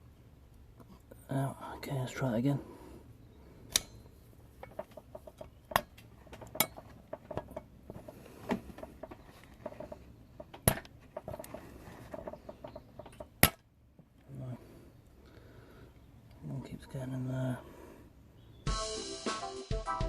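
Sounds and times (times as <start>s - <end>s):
sharp metal clicks: 3.7s - 6.8s.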